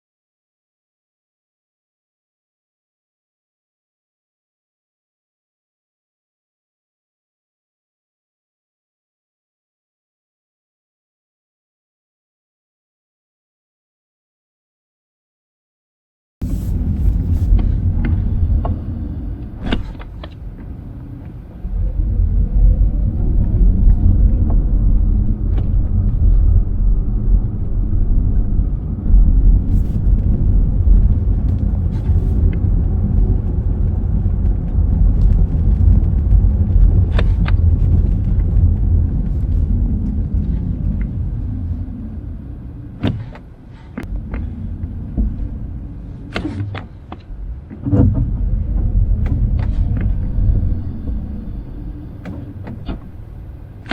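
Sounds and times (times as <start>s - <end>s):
car road rumble: 16.4s - 53.9s.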